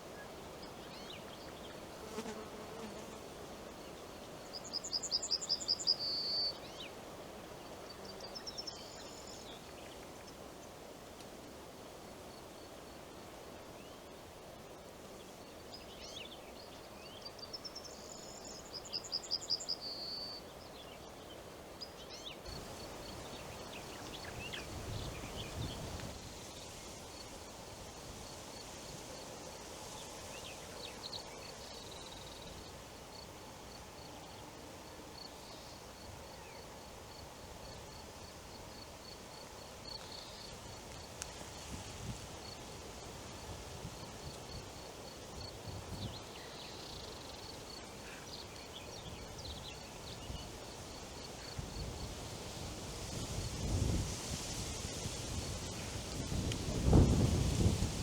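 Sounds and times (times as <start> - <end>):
wind in the trees: 3.2 - 58.0.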